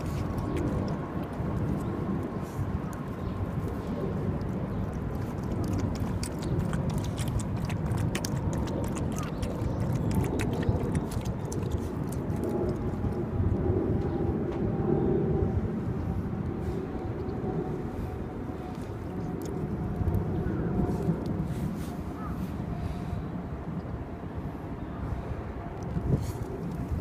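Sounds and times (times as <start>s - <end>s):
dog claws clicking on pavement: 0.0s - 13.2s
city traffic rumble: 0.0s - 27.0s.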